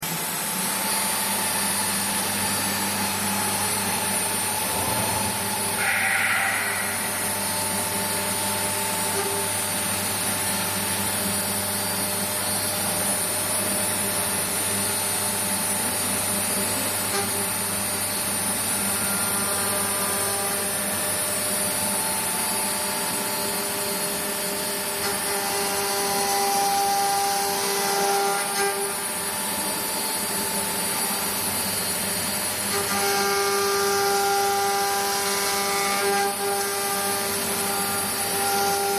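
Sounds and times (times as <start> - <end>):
cnc router running: 0.0 - 38.9
brief higher machine sound: 4.6 - 9.6.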